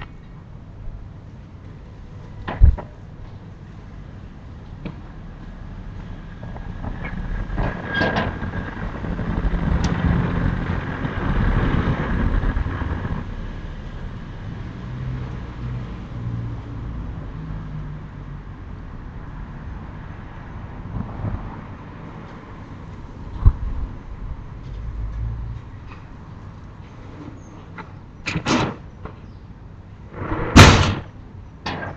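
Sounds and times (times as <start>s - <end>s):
vehicle passing: 30.1s - 31.1s
sharp knocks: 30.2s - 31.1s.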